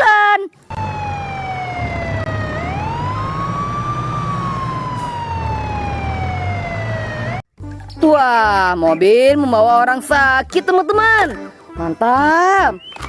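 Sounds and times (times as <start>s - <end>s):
ambulance siren wailing: 0.7s - 7.4s.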